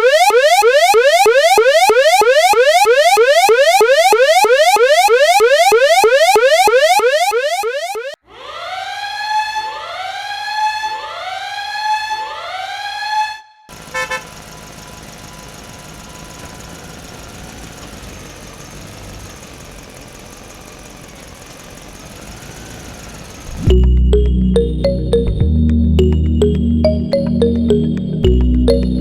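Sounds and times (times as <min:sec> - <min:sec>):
siren wailing: 0:00.0 - 0:13.6.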